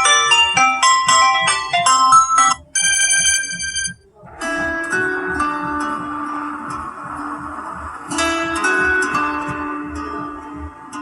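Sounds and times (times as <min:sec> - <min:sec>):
phone ringtone melody: 0:00.0 - 0:05.8.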